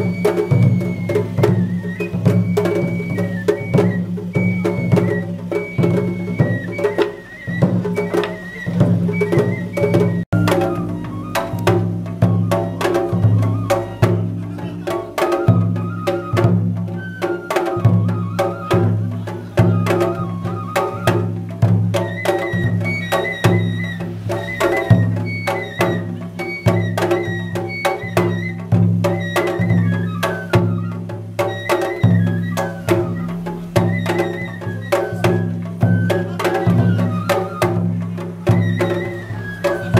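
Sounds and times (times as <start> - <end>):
high held melody line: 0.0 - 21.1
deep drum struck in steady rhythm: 0.0 - 39.9
drums struck: 3.6 - 17.0.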